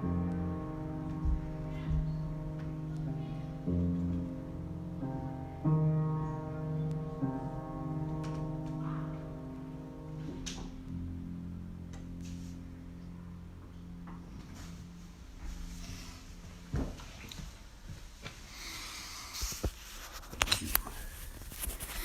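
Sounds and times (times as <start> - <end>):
held chords ringing: 0.0 - 17.3
soft low tone: 0.0 - 17.9.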